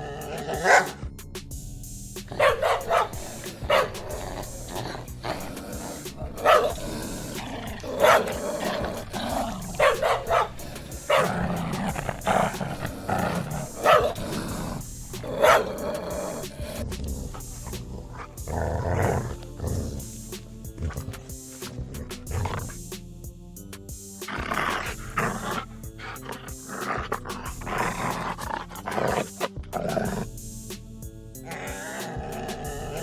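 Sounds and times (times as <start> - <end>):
dogs barking: 0.0 - 1.1, 2.3 - 19.6, 24.4 - 30.3
dogs growling: 0.0 - 1.1, 2.2 - 22.9, 24.2 - 30.4, 31.4 - 33.0.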